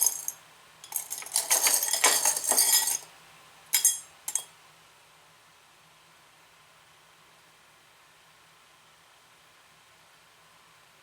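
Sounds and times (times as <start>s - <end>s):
metal hair pins clinking: 0.0s - 3.1s, 3.8s - 4.5s.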